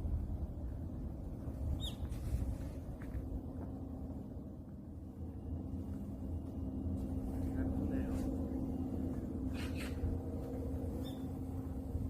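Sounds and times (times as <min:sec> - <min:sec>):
low rumble with hum: 0:00.0 - 0:12.0
high bird chirps: 0:01.8 - 0:02.1, 0:11.0 - 0:11.4.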